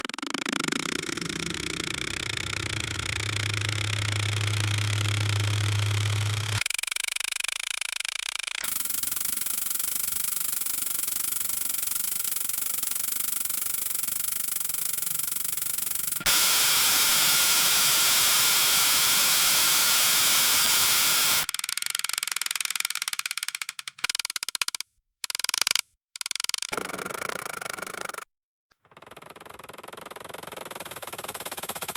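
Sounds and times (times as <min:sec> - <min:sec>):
rapid stuttering rattle: 0:00.0 - 0:28.2, 0:29.0 - 0:31.9
faint whine: 0:01.0 - 0:06.6.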